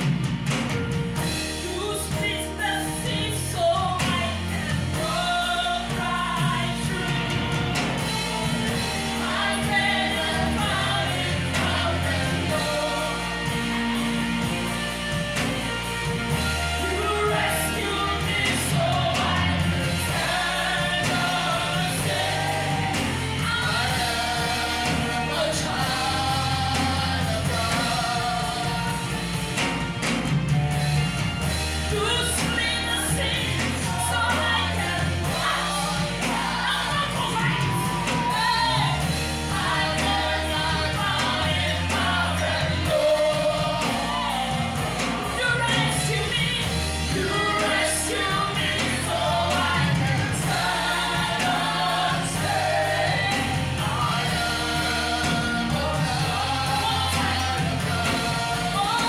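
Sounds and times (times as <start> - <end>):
band with held bass notes: 0.0 - 59.0
voices singing gospel: 0.0 - 59.0.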